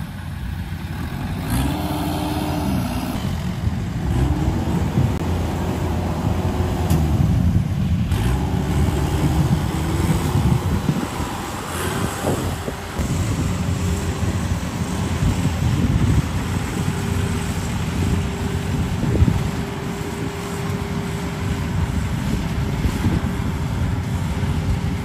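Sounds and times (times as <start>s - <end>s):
combine harvester engine rumble: 0.0s - 25.0s
wind on microphone: 1.4s - 25.0s
thin steady whine: 8.5s - 25.0s.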